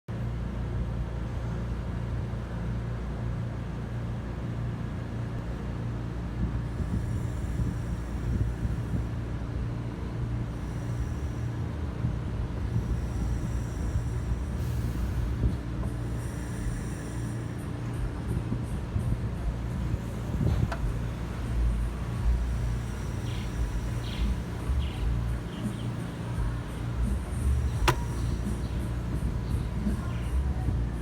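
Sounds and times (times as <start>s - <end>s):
car engine idling: 12.6s - 31.0s.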